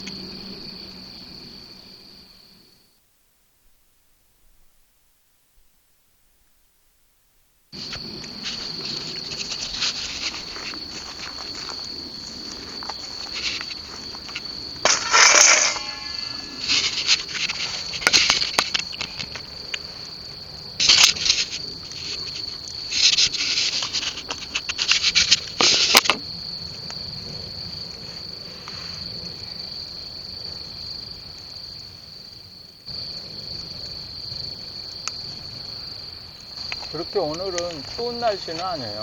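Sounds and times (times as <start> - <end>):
insects trilling: 0.0 - 3.2, 7.7 - 39.0
crackling and rustling: 7.7 - 29.7, 32.9 - 39.0.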